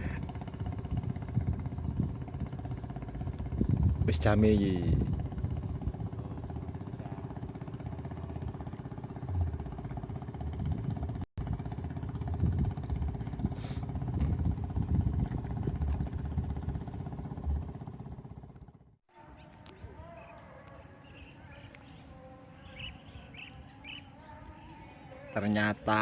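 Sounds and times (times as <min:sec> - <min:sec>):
small engine running: 0:00.0 - 0:20.3.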